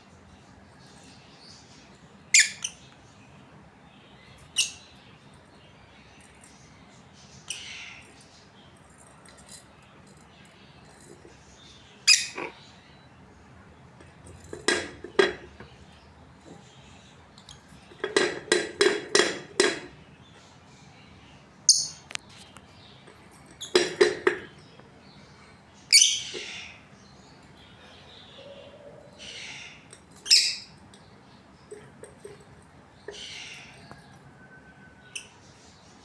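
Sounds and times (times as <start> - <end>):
budgerigars chirping: 11.2 - 13.1, 25.9 - 30.8, 33.0 - 34.1.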